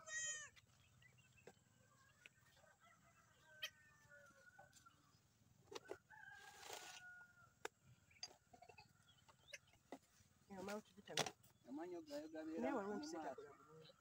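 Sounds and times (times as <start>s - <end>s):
rooster crowing: 6.1s - 7.5s.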